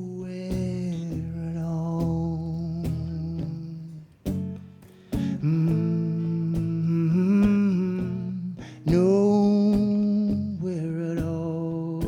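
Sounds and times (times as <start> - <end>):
strummed guitar: 0.0 - 12.0
man humming: 5.3 - 12.0.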